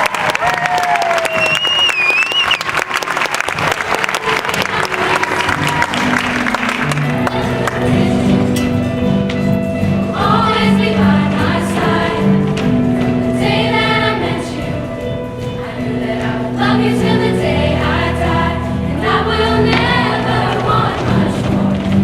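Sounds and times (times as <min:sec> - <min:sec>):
choir singing: 0:04.2 - 0:06.6, 0:07.2 - 0:09.2, 0:09.8 - 0:22.0.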